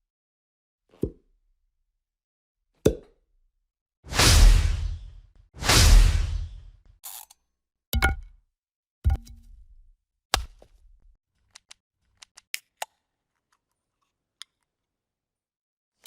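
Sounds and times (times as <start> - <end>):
sharp transition hits: 4.1 - 6.7.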